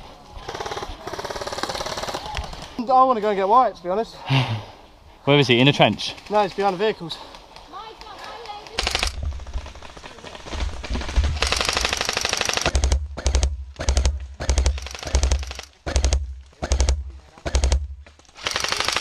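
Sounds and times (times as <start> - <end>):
airsoft gun firing bursts: 8.7 - 10.1, 11.0 - 19.0.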